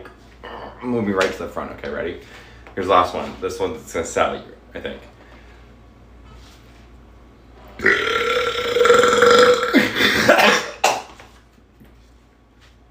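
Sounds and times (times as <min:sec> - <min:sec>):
person burping: 0:07.8 - 0:11.1.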